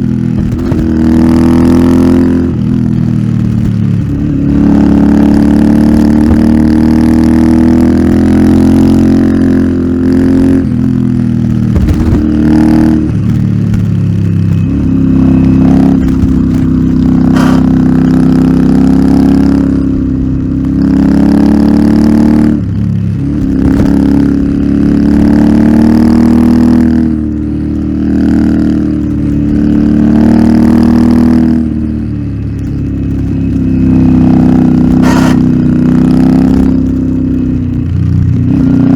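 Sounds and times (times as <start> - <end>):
motorcycle engine pulling: 11.5 - 17.9.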